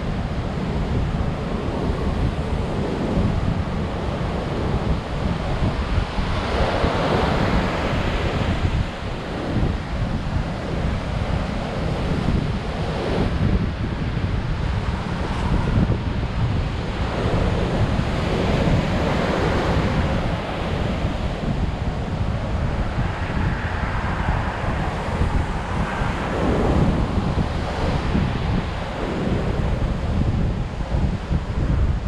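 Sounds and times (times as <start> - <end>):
wind buffeting microphone: 0.0 - 32.0
surf breaking on beach: 0.8 - 32.0.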